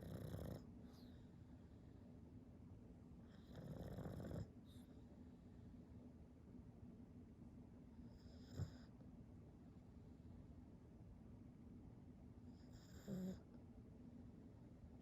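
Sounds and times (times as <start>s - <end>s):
dog snoring: 0.0s - 1.1s, 3.3s - 4.9s, 8.1s - 9.0s, 12.5s - 13.5s.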